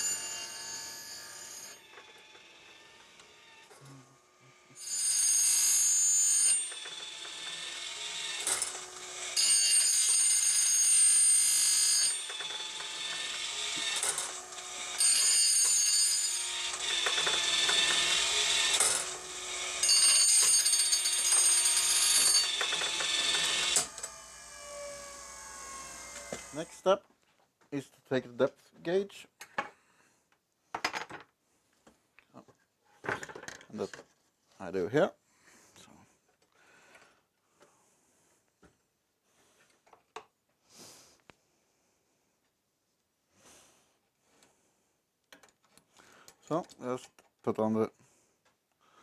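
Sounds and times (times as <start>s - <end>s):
chain grinder grinding: 6.5s - 10.8s, 11.7s - 26.7s.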